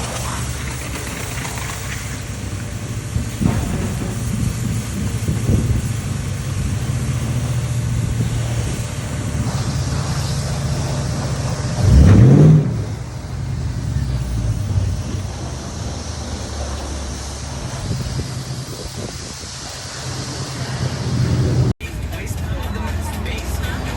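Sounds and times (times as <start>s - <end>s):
car engine running and revving: 0.0s - 23.9s.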